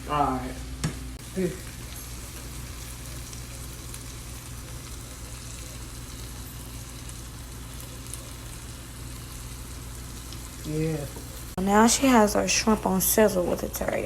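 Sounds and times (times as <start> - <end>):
shrimp sizzling in a pan: 0.4 - 14.0.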